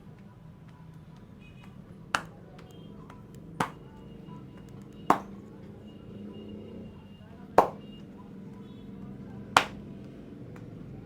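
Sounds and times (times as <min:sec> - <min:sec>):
hand strikes on head: 0:05.1 - 0:05.3, 0:07.6 - 0:07.8.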